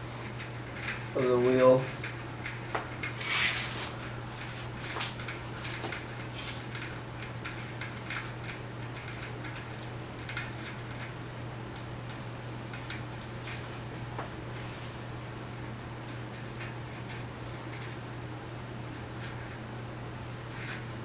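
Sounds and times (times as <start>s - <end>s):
steady low hum: 0.0s - 21.0s
brief scrape: 3.2s - 4.0s.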